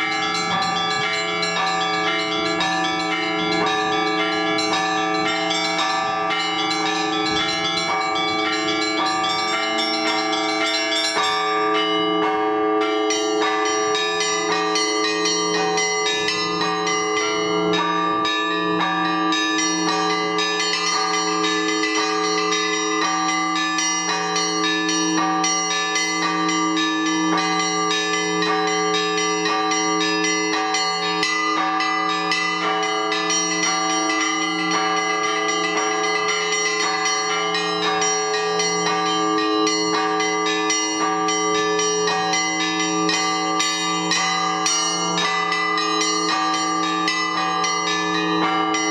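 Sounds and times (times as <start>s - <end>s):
large bells pulsing hum: 0.0s - 48.9s
small bells chiming rapidly: 0.0s - 48.9s.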